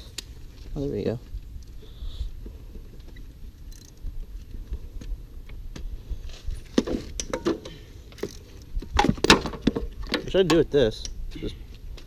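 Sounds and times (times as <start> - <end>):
tools and parts clattering: 6.7 - 10.7.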